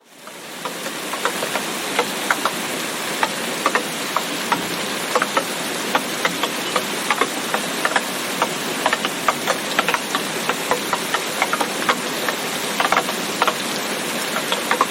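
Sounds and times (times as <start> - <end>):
heavy raindrops tapping: 0.0 - 14.9
steady rain hiss: 0.0 - 14.9.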